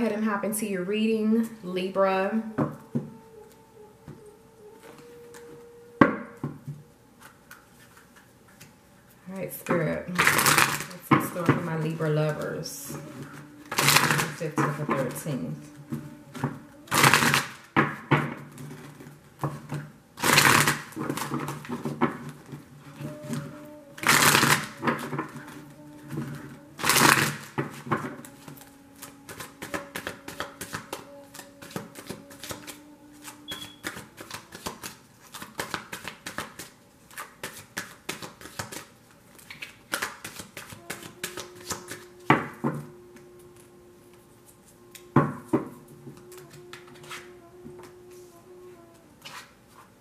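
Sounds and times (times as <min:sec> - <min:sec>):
cards riffling: 0:10.1 - 0:11.4, 0:12.4 - 0:17.8, 0:20.2 - 0:42.6.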